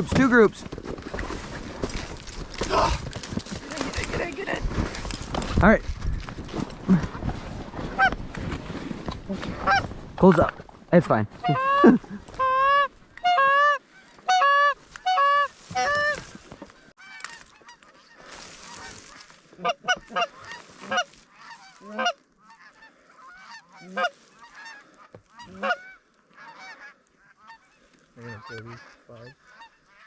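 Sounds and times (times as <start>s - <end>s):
geese honking: 7.8s - 8.6s, 9.3s - 10.5s, 11.3s - 30.0s.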